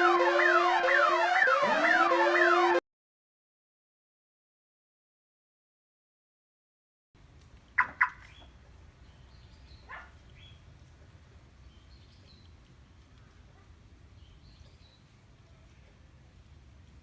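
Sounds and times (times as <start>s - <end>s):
car alarm chirps: 0.0s - 2.8s.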